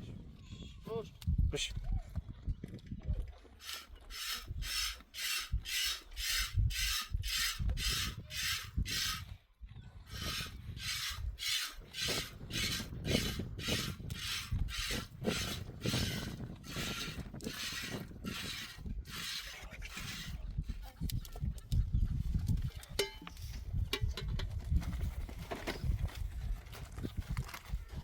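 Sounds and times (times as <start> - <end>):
milk squirting into pail: 3.6 - 9.2, 10.1 - 20.3.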